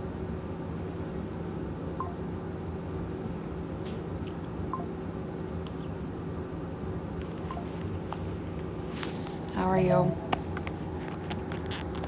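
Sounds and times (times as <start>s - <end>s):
room noise hum and hiss: 0.0s - 12.0s.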